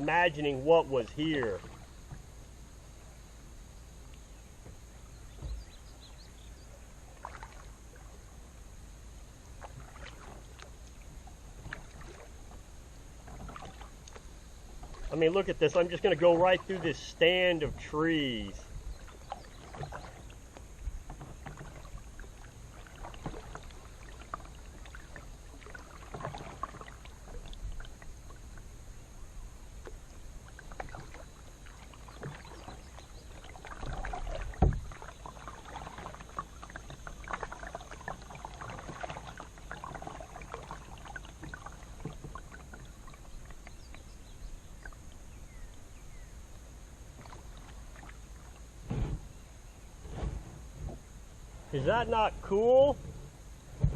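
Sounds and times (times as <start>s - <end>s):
paddle splashing in water: 0.0s - 3.1s, 4.6s - 8.6s, 9.4s - 53.9s
paddle clicks: 13.3s - 28.6s.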